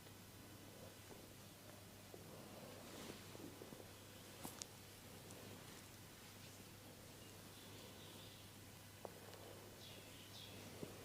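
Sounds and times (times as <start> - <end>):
low steady hum: 0.0 - 11.0
faint bird chirps: 7.1 - 8.6, 9.3 - 11.0.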